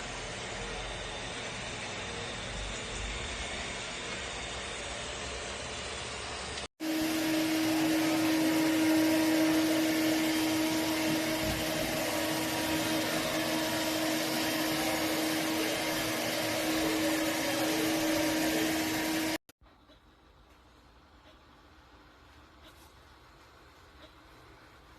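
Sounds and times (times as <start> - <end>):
robot vacuum cleaner whirring: 0.0 - 19.4.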